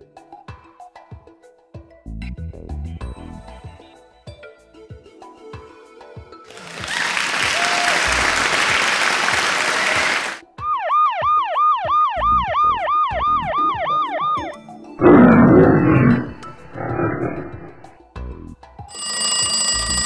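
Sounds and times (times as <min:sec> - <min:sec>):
electronic siren-like wail: 0:10.6 - 0:14.6
loud roar: 0:15.0 - 0:17.9.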